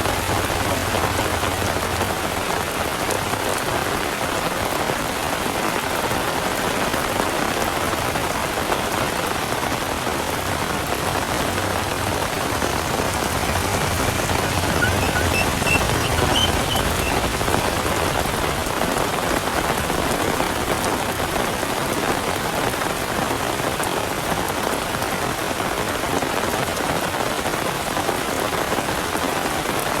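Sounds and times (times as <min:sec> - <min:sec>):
rain splashing on surfaces: 0:00.0 - 0:30.0
high chirps: 0:12.3 - 0:18.2.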